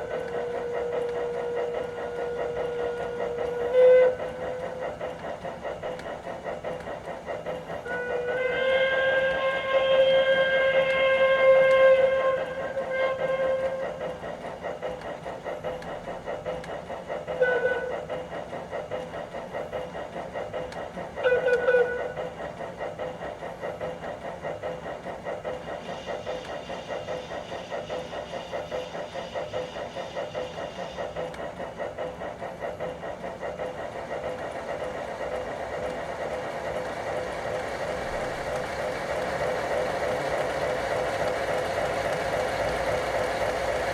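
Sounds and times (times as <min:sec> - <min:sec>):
steam whistle: 0:00.0 - 0:04.8, 0:07.8 - 0:13.9, 0:17.4 - 0:18.0, 0:21.2 - 0:22.2
steam locomotive exhaust chuff: 0:00.0 - 0:43.9.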